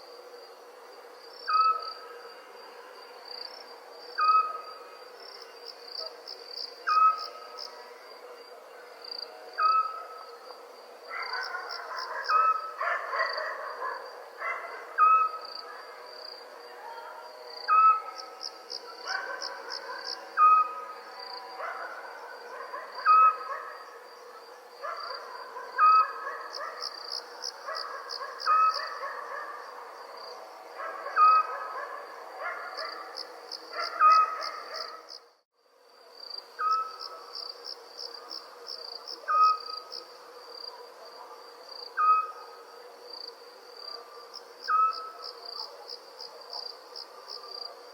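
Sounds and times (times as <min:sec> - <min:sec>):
crickets chirping: 0:00.0 - 0:47.9
small owl calling: 0:15.0 - 0:15.4, 0:23.0 - 0:23.5, 0:28.4 - 0:29.0, 0:36.6 - 0:37.1, 0:39.3 - 0:39.7, 0:42.0 - 0:42.5, 0:44.7 - 0:45.2.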